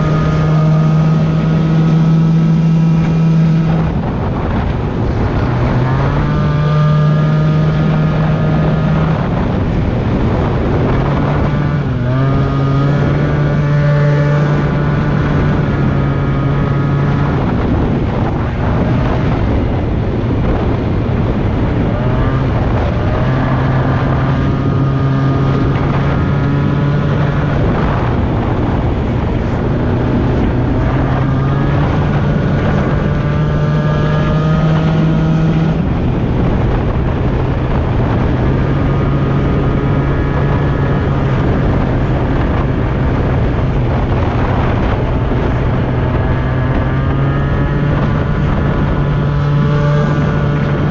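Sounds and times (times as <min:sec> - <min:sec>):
scooter engine revving: 0:00.0 - 0:50.9
wind noise on microphone: 0:00.0 - 0:50.9.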